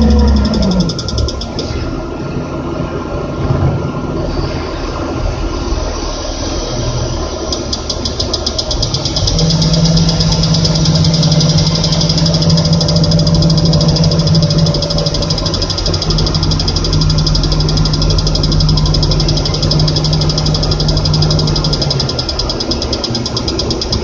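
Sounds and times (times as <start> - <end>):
rapid high warning beeps: 0.0 - 1.8, 7.5 - 24.0
crane engine running: 0.0 - 24.0.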